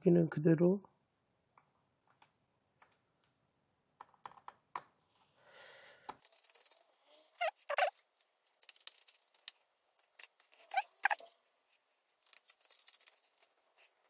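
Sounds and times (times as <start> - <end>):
small screws and parts ticking: 6.1 - 14.0
screwdriver clicking and scraping: 7.4 - 11.4, 12.2 - 14.0.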